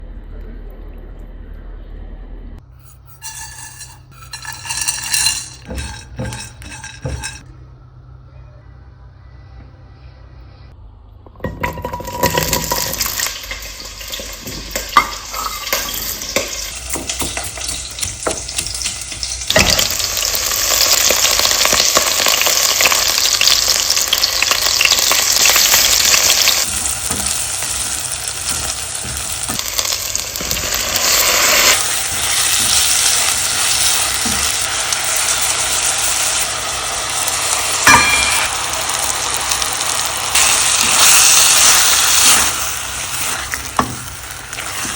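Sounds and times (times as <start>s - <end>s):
spoon scraping a pan: 2.7s - 7.4s, 11.9s - 36.4s, 40.4s - 44.9s
food sizzling in a pan: 2.8s - 7.4s, 11.8s - 44.9s
utensil clinking on pan: 2.8s - 7.4s, 11.4s - 22.9s, 24.6s - 36.4s, 37.6s - 38.7s.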